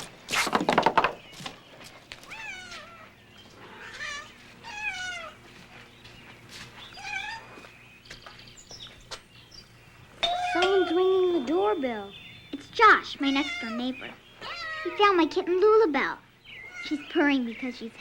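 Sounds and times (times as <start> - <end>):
kitten meowing: 13.3 - 15.4.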